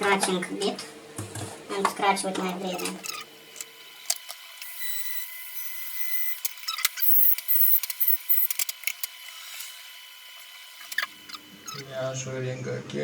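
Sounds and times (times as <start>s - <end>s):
rotary tool whining: 2.5s - 12.2s
drill bit grinding scratchily: 4.5s - 11.9s.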